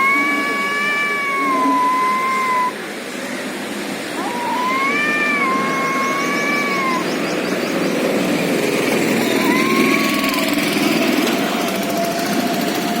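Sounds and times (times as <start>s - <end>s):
cats yowling: 0.0s - 2.8s, 4.1s - 7.7s, 9.2s - 11.1s
engine-like drone: 0.0s - 13.0s.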